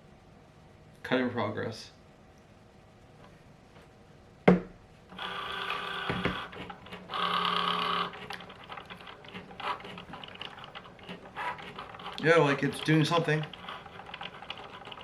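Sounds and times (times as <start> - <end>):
cutting machine motors whining: 5.1 - 15.0.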